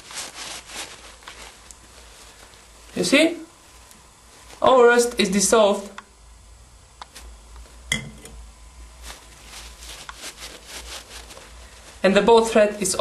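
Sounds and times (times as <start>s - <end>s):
glassware clinking: 7.9s - 8.3s.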